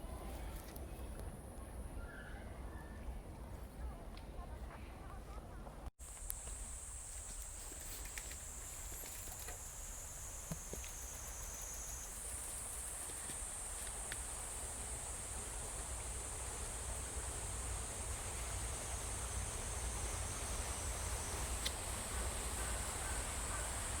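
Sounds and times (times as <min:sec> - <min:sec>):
insects shrilling: 0:06.0 - 0:24.0
faint ticks: 0:06.1 - 0:09.7, 0:21.6 - 0:21.9.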